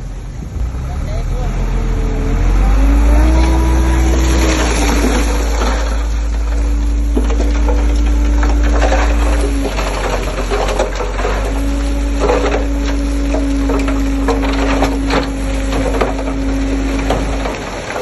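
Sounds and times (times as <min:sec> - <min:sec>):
heavy diesel machinery rumbling: 0:00.0 - 0:18.0
metal clanks and rattles: 0:04.1 - 0:18.0.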